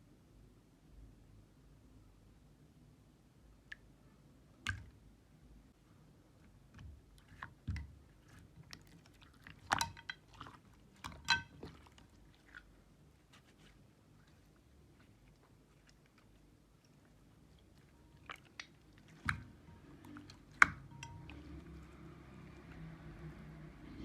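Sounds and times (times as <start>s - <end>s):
slime squelching and crackling: 7.2s - 21.2s.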